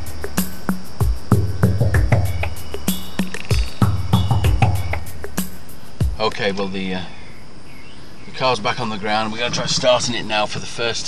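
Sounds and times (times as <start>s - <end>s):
bass line: 0.0s - 6.3s
drum beat: 0.0s - 6.4s.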